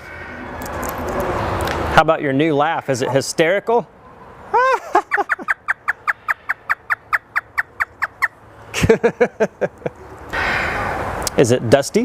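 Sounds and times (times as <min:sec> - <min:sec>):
parrot imitating laughter: 0:04.5 - 0:08.3.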